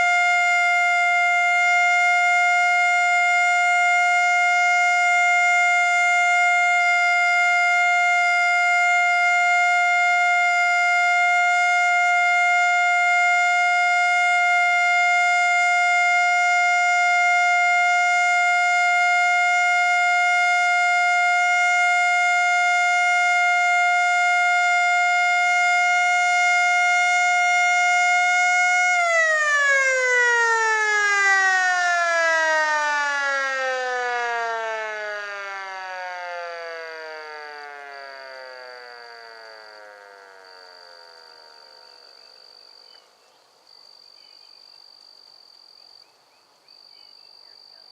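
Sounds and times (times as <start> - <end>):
siren winding down: 0.0 - 42.3
fire siren steady tone: 0.0 - 43.1.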